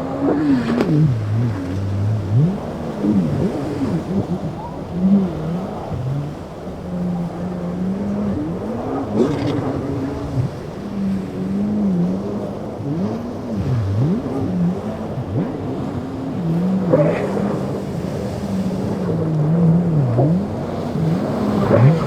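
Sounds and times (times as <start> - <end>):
powerboat engines revving: 0.0 - 22.0.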